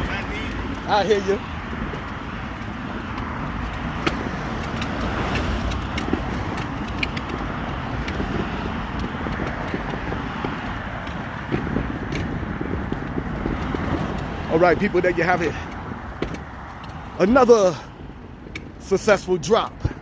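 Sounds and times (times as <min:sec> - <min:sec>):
vehicle and road noise: 0:00.0 - 0:20.0
light clicks and taps: 0:01.9 - 0:12.3.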